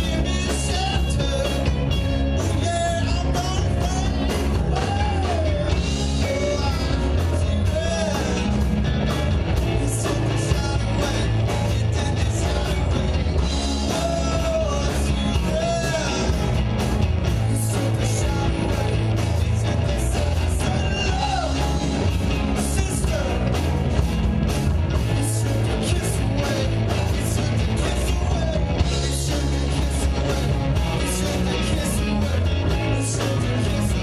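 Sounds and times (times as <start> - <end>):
person singing: 0.0 - 23.7
live rock band playing: 0.0 - 34.0.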